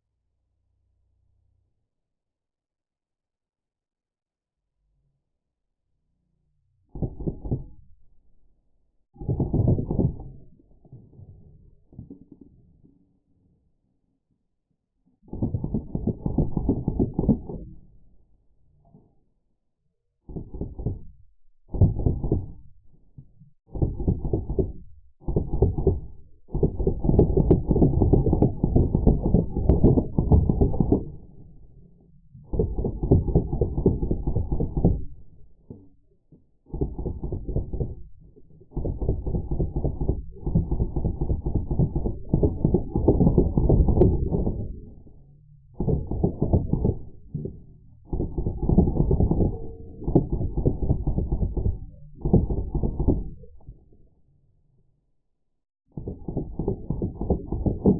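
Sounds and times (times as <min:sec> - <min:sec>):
slowed bb gun bursts: 0:15.2 - 0:17.9, 0:20.3 - 0:22.7, 0:23.7 - 0:31.5, 0:32.5 - 0:35.3, 0:36.7 - 0:45.0, 0:45.8 - 0:47.5, 0:48.1 - 0:53.6, 0:56.0 - 0:57.9.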